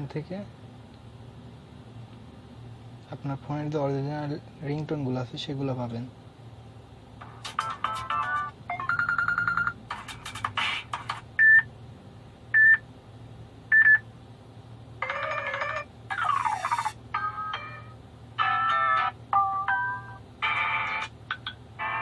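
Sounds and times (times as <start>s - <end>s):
phone ringtone melodies: 7.2s - 10.6s, 15.0s - 22.0s
fast repeating tone: 16.1s - 17.0s.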